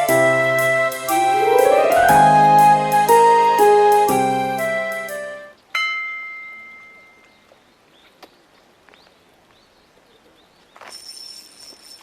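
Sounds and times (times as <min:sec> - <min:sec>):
piano note: 0:00.0 - 0:05.5.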